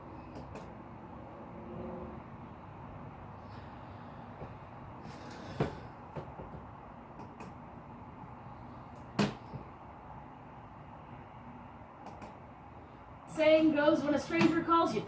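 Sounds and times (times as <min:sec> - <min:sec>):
sharp knocks: 0:09.2 - 0:09.6.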